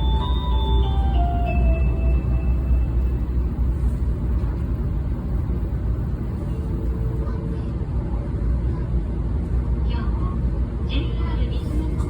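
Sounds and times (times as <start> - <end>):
onboard chime: 0.0 - 3.2
train cabin low rumble: 0.0 - 12.0.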